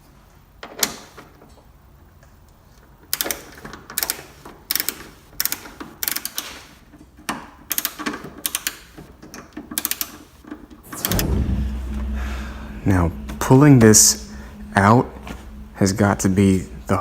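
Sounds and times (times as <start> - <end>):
ratchet clicking: 9.8 - 10.3.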